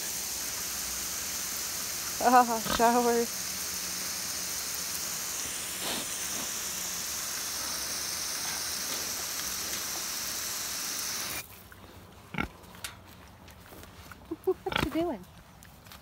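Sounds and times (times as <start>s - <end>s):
garden hose spraying water: 0.0s - 11.6s.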